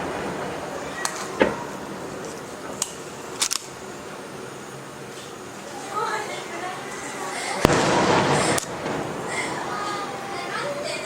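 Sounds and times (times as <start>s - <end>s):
fireworks pops and cracks: 0.0s - 4.4s, 7.6s - 11.0s
background haze of fireworks: 0.0s - 11.0s.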